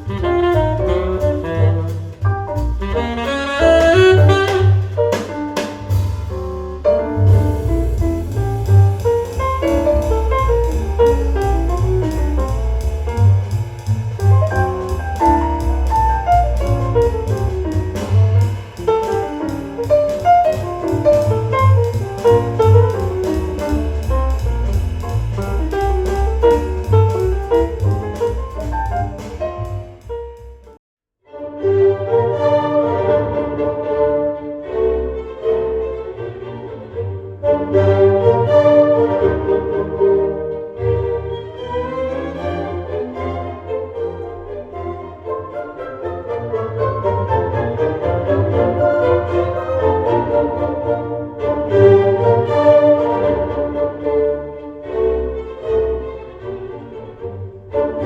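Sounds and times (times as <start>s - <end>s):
saxophone: 0.0s - 5.3s
cymbals: 0.0s - 30.6s
double bass: 0.0s - 30.8s, 31.6s - 58.0s
drums: 0.0s - 30.8s
piano: 0.0s - 58.0s.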